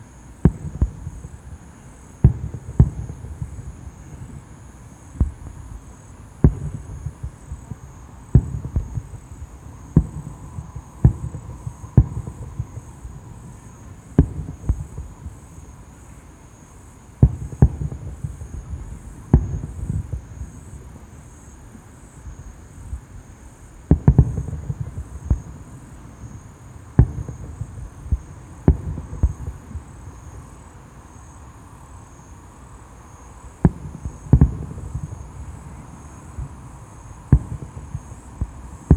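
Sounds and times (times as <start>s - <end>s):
fireworks bangs with rumbling echo: 0.4s - 4.5s, 5.1s - 5.8s, 6.4s - 15.5s, 17.2s - 20.9s, 23.9s - 30.6s, 33.6s - 38.9s.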